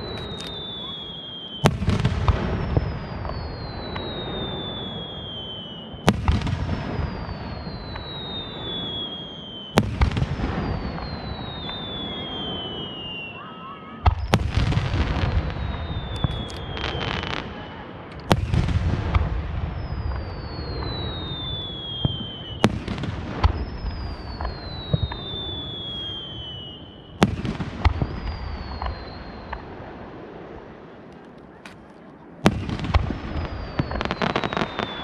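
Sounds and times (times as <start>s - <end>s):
falling whistles: 0.0s - 2.0s, 2.6s - 6.1s, 6.9s - 10.0s, 10.6s - 14.3s, 15.3s - 17.4s, 19.7s - 22.7s, 23.6s - 27.3s, 28.0s - 29.6s, 33.4s - 35.0s
firework bangs: 0.0s - 31.0s, 31.6s - 35.0s
firework crackling: 0.0s - 35.0s.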